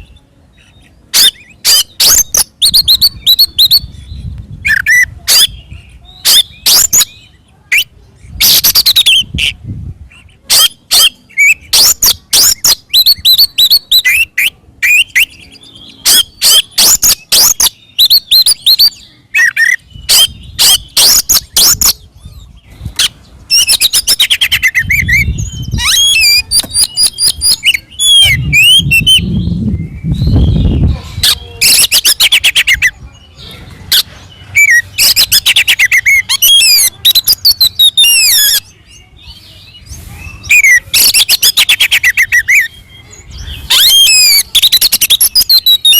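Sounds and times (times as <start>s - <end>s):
bird singing harsh notes: 0.0s - 45.9s.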